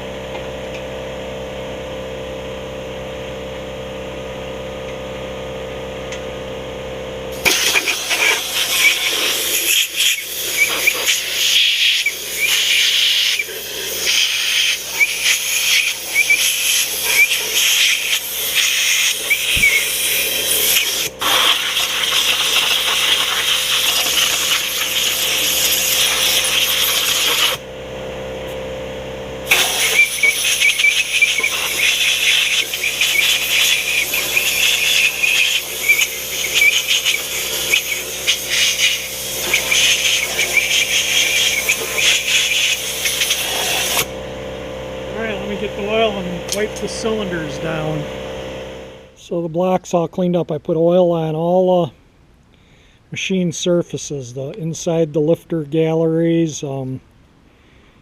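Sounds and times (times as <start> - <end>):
pressure washer hum: 5.3 - 49.2
water jet hissing on metal: 7.4 - 27.6, 29.5 - 44.1.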